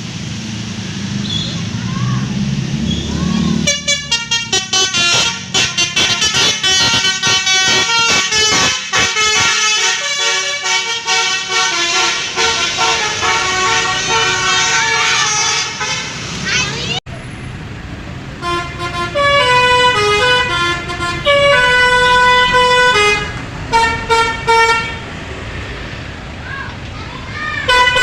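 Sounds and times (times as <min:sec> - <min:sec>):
musical bus horn tune: 0:03.5 - 0:16.2, 0:18.4 - 0:25.0, 0:27.7 - 0:28.0.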